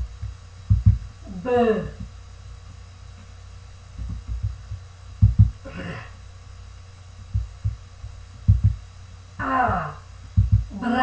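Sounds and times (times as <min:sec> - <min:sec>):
dull low thumps: 0:00.0 - 0:01.2, 0:03.9 - 0:05.6, 0:07.2 - 0:09.0, 0:09.6 - 0:10.8.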